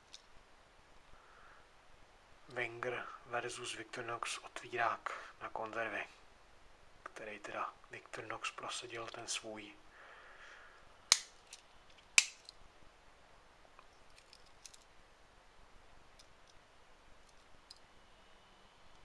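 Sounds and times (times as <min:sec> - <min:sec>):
pocket knife tool snapping: 0:11.1 - 0:11.6, 0:12.2 - 0:12.6.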